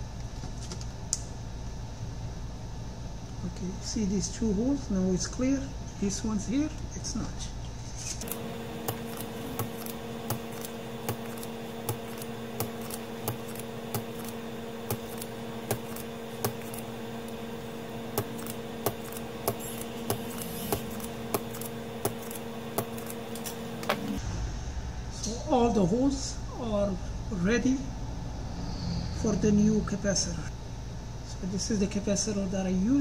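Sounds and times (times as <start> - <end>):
vacuum pump humming: 8.2 - 24.2.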